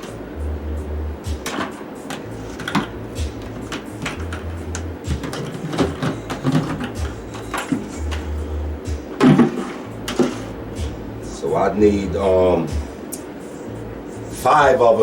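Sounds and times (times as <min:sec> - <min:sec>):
plastic buckets clicking: 0:01.4 - 0:08.3, 0:09.1 - 0:10.5
low bass note of music: 0:06.1 - 0:12.9.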